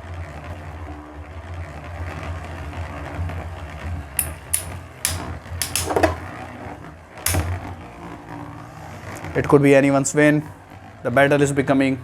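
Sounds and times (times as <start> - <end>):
spinning tops clashing: 4.2 - 6.3, 7.3 - 7.6.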